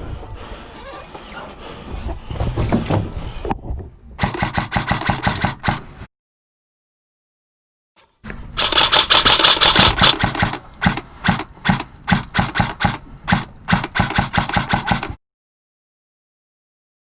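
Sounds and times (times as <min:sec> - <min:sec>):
airsoft gun full-auto burst: 0:04.2 - 0:05.8, 0:08.6 - 0:15.2
airsoft gun rapid single shots: 0:04.2 - 0:05.8, 0:08.6 - 0:15.2.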